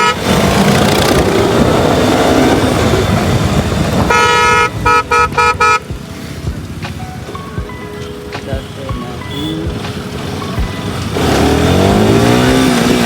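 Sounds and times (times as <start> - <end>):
vehicle horn honking: 0.0 - 0.5, 4.0 - 5.9, 8.5 - 11.1
wind and road noise: 0.0 - 13.0.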